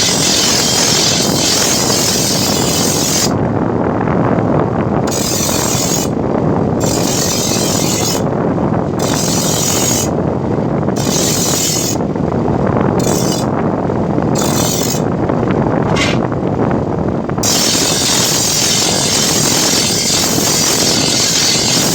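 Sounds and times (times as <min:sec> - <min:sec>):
power grinder running: 0:00.0 - 0:03.3, 0:17.4 - 0:21.9
blade grinding on abrasive: 0:00.0 - 0:03.4, 0:05.1 - 0:06.2, 0:06.8 - 0:08.3, 0:09.0 - 0:10.2, 0:11.0 - 0:12.0, 0:13.0 - 0:13.5, 0:14.4 - 0:15.1, 0:15.9 - 0:16.3, 0:17.4 - 0:21.9.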